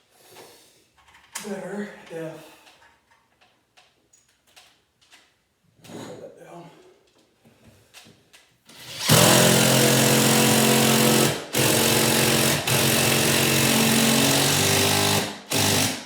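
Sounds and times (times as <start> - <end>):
impact driver hammering: 8.8 - 16.0.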